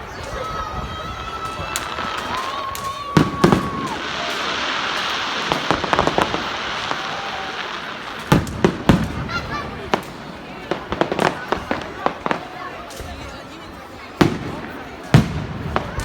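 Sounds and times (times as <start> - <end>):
firework bangs: 0.1 - 16.0
firework whistle: 0.2 - 10.1.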